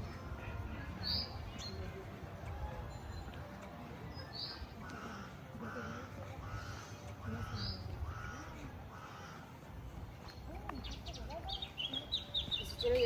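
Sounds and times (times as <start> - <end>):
murmur of distant voices: 0.0 - 13.0.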